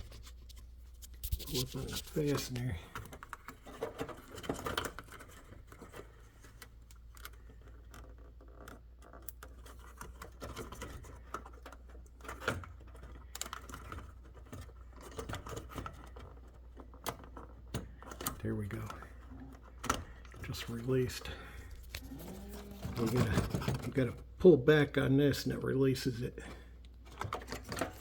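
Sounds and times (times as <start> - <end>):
faint scratching: 0.0 - 4.3, 20.4 - 24.4.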